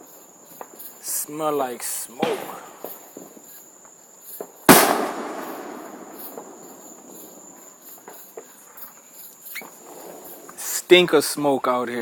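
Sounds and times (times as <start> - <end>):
firework bang echoing: 2.2 - 3.3, 4.7 - 7.6
distant firework pops: 2.2 - 3.5, 4.3 - 8.5.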